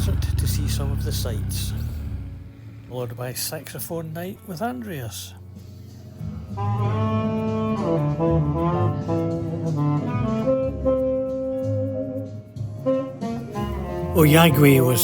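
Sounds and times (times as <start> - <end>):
saxophone playing a melody: 6.5 - 15.0.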